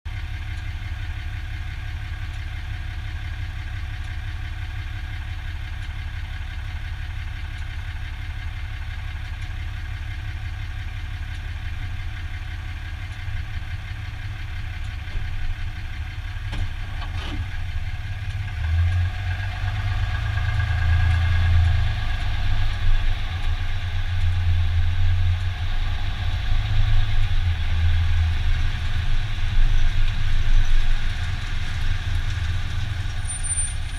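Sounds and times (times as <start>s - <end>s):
pickup engine idling: 0.1s - 33.9s.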